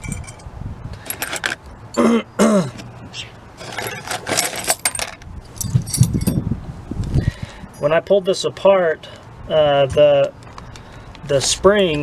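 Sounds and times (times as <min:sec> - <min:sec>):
small metal parts clinking: 0:00.0 - 0:02.0, 0:03.6 - 0:06.4.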